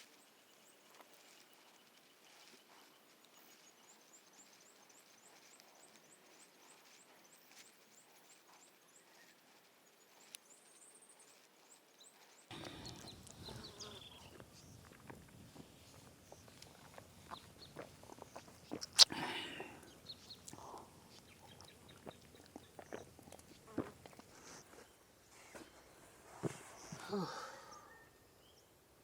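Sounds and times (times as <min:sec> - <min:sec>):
quiet forest ambience: 0:00.0 - 0:29.0.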